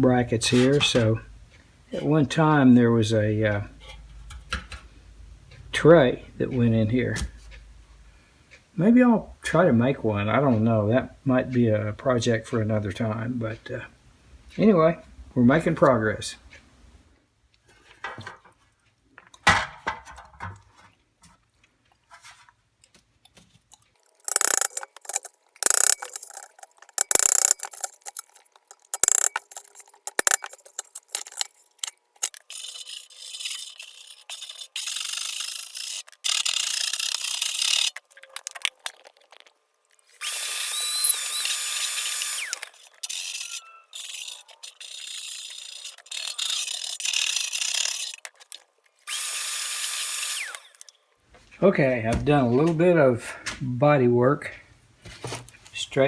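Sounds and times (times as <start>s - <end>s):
wire brush scraping steel: 0.4s - 1.2s, 24.0s - 49.2s.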